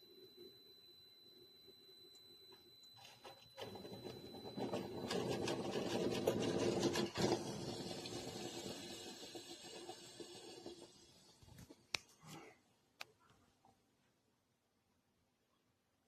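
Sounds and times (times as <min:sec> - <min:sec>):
coffee maker sputtering: 0:01.3 - 0:11.9.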